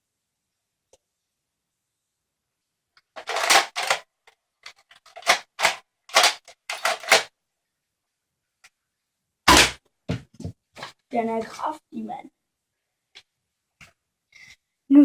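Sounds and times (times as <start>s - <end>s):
plastic toy blaster clacking: 3.2s - 4.0s, 5.0s - 7.3s.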